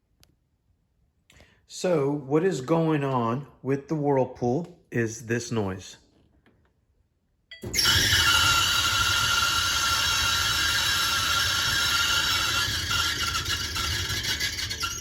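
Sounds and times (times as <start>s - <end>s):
dryer squealing: 7.6s - 15.0s.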